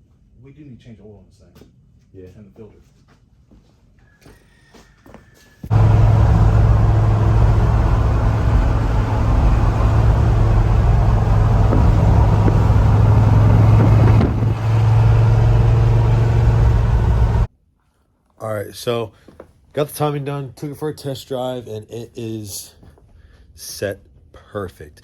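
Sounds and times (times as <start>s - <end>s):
truck engine running: 5.7s - 17.5s.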